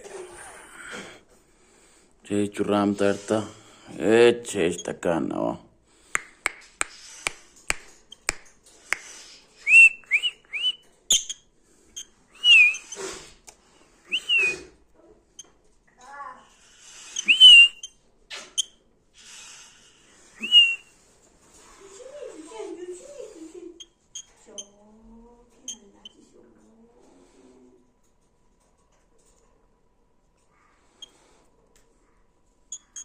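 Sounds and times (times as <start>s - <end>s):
parrot whistling short notes: 12.4s - 13.0s, 14.1s - 14.6s, 17.2s - 17.9s, 20.4s - 20.8s.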